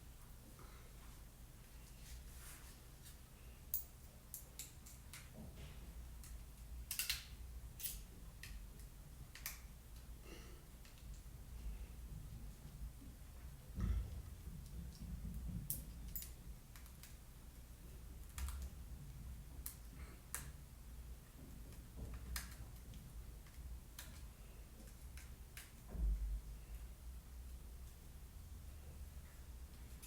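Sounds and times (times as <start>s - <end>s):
small hard parts clicking: 6.2s - 10.1s.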